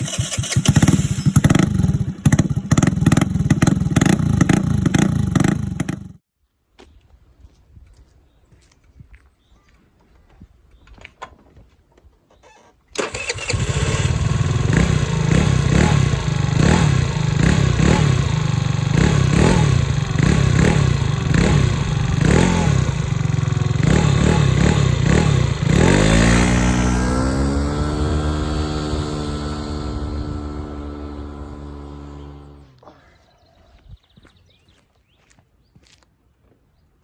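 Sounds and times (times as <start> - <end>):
scooter engine revving: 0.0 - 6.2, 13.0 - 32.8.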